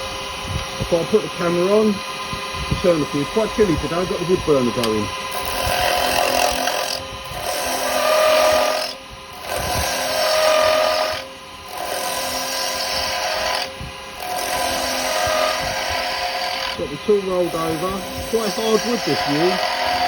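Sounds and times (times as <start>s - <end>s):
chisel scraping wood on lathe: 4.8s - 20.0s.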